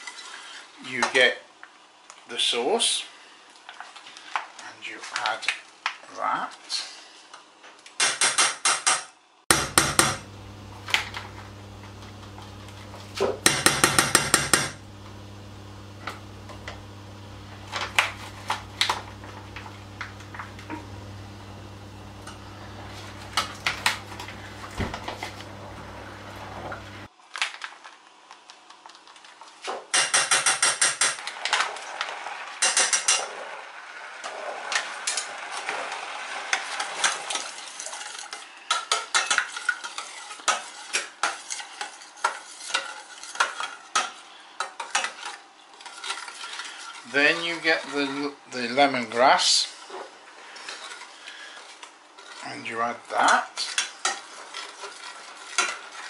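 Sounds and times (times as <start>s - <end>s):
utensils knocking: 9.5s - 11.3s, 11.9s - 14.9s
steady low hum: 9.5s - 27.1s.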